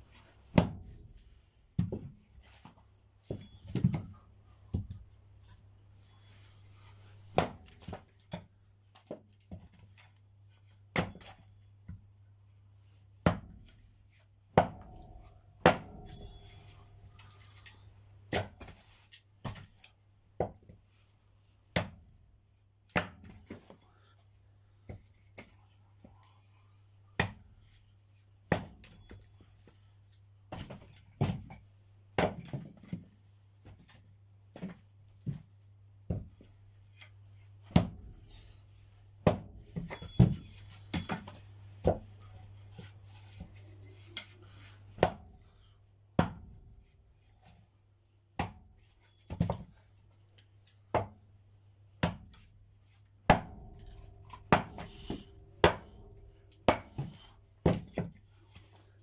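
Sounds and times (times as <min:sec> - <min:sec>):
firewood being chopped: 0:53.3 - 0:56.0.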